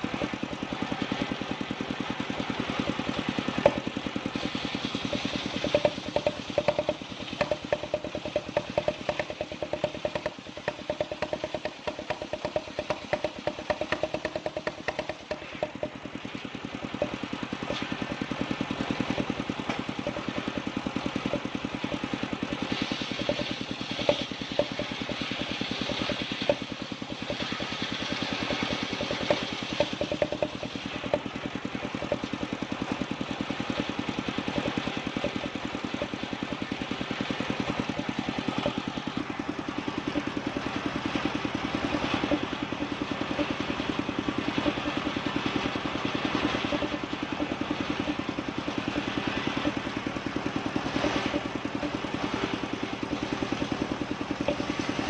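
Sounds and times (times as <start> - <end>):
wood saw engine cutting timber: 0.0 - 55.0
sharp knocks: 5.1 - 16.2, 21.2 - 32.4.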